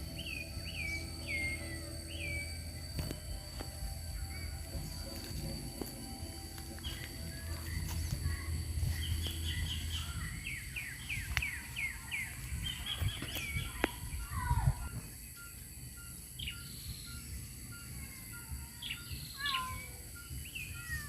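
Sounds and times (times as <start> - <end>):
low rumble: 0.0 - 15.1
bird chirping: 0.0 - 21.0
steady high-pitched tone: 0.0 - 21.0.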